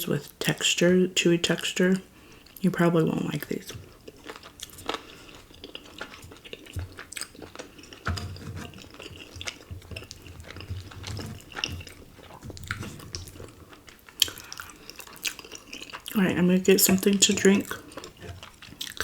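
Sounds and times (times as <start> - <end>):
close-miked chewing: 1.5 - 19.0
wet mouth clicks and smacks: 14.0 - 16.1.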